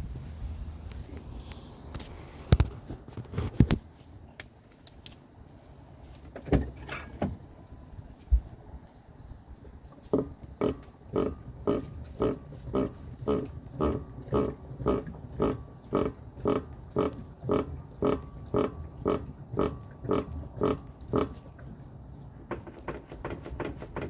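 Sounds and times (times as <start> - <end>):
scattered knocks: 22.5 - 24.0.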